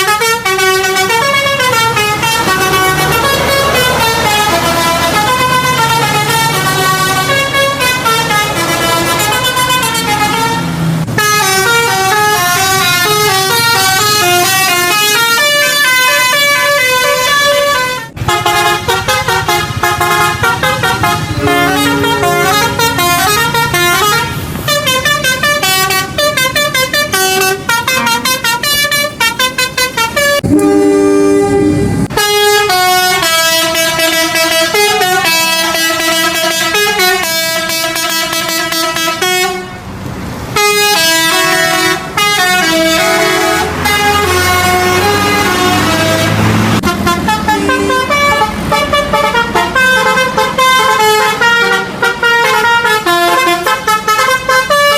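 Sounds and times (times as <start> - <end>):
bus horns playing melodies: 0.0 - 54.9
low steady horn chord: 17.5 - 39.7, 40.6 - 50.2.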